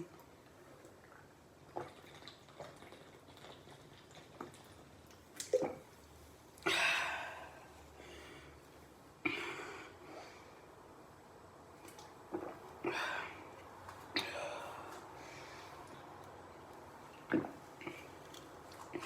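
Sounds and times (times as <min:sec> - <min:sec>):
person sipping and swallowing: 0:00.8 - 0:05.9, 0:11.8 - 0:15.1, 0:17.2 - 0:19.0.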